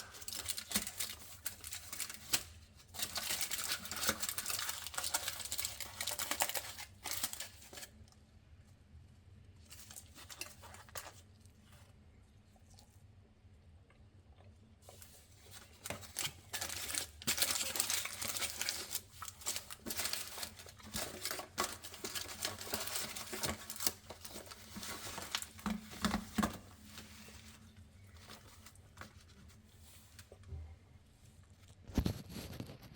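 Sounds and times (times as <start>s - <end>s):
wrapper crinkling: 0.0s - 8.0s, 9.7s - 11.3s, 14.8s - 30.4s.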